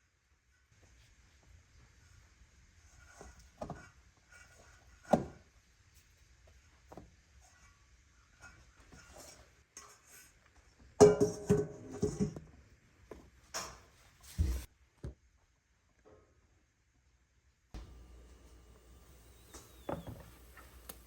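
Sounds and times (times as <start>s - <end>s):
dishes and utensils clinking: 11.0s - 12.4s.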